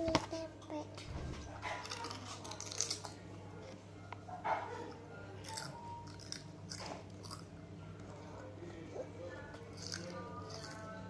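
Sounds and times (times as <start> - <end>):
chewing crunchy chips: 1.6 - 3.8, 5.4 - 8.4, 9.6 - 11.0.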